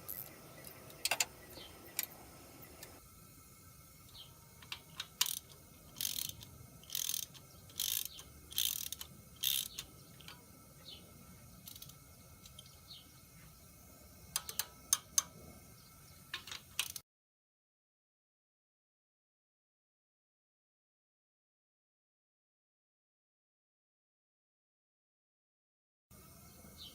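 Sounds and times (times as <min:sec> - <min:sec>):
sharp metal clicks: 0:00.1 - 0:02.2, 0:04.6 - 0:10.5, 0:11.6 - 0:12.7, 0:14.3 - 0:15.4, 0:16.3 - 0:17.0
hand tools ratcheting on metal: 0:04.6 - 0:10.4, 0:11.6 - 0:12.6, 0:16.3 - 0:17.0.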